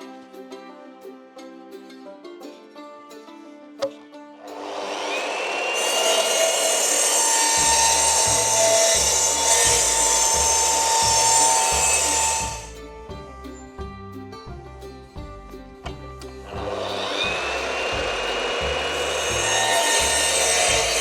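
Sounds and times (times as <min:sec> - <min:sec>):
power saw cutting timber: 0:03.8 - 0:12.8, 0:15.9 - 0:21.0
background music with beat: 0:09.1 - 0:21.0.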